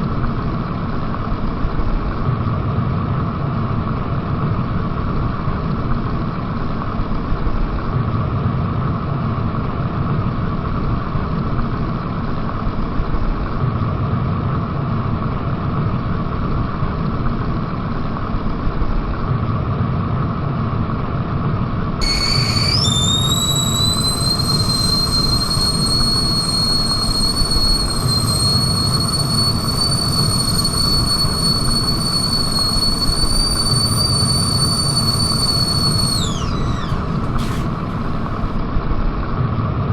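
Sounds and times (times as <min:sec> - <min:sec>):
kettle rumbling hiss: 0:22.0 - 0:38.6
kettle whistle: 0:22.0 - 0:38.6.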